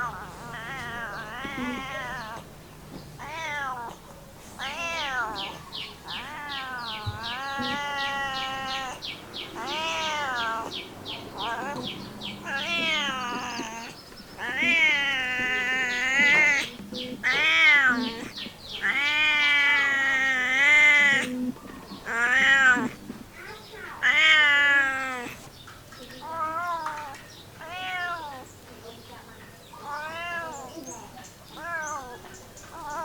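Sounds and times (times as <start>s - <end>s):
cat meowing: 0.0s - 2.5s, 3.2s - 4.0s, 4.6s - 23.0s, 23.8s - 25.4s, 26.2s - 28.5s, 29.8s - 33.0s.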